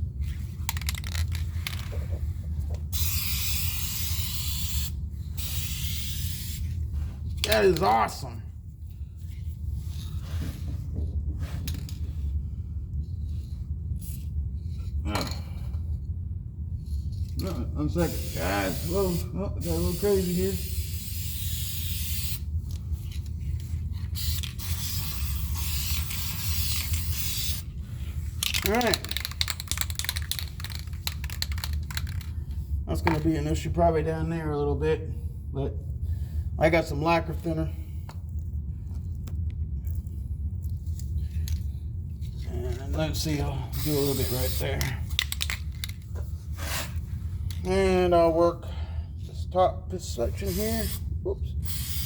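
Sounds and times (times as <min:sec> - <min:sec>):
spray can hissing: 0:02.9 - 0:06.7, 0:18.0 - 0:22.5, 0:24.2 - 0:27.7, 0:43.8 - 0:44.7, 0:50.5 - 0:51.0, 0:51.6 - 0:52.0.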